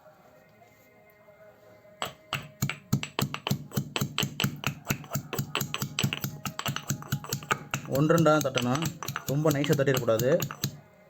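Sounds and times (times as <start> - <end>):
garlic cloves being pounded: 2.0 - 10.8.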